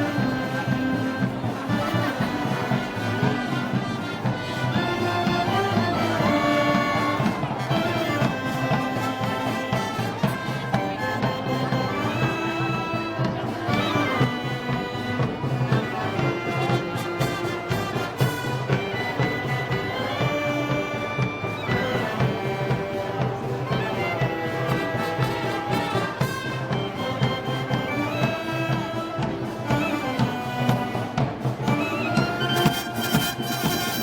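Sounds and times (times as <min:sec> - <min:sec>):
brass band playing: 0:00.0 - 0:34.0
trumpets and trombones holding notes: 0:00.0 - 0:34.0.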